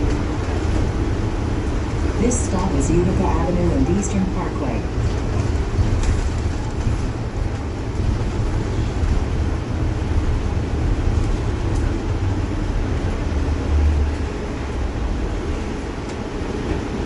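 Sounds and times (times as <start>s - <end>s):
bus engine rumble: 0.0s - 17.0s.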